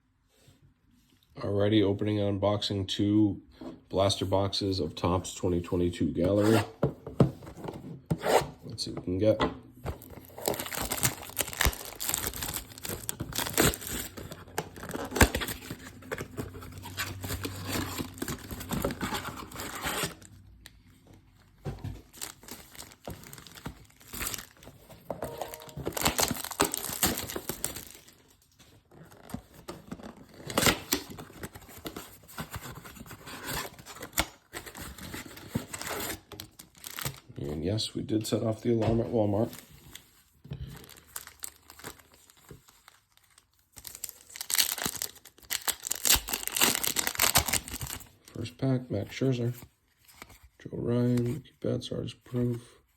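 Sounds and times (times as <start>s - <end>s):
cardboard ripping: 10.0s - 20.3s, 25.4s - 28.2s, 43.8s - 48.1s
plastic crinkling: 10.0s - 20.3s, 22.0s - 29.4s, 35.6s - 37.3s, 39.4s - 48.4s.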